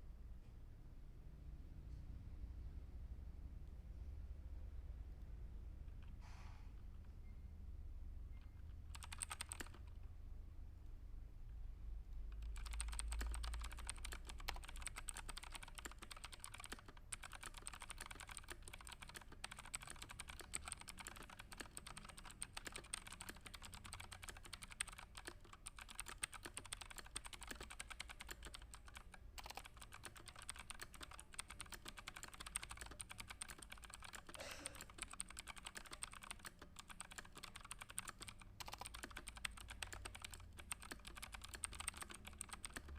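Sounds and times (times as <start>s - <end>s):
low steady hum: 0.0s - 37.0s
fast typing on keyboard: 8.4s - 10.0s, 12.3s - 42.9s.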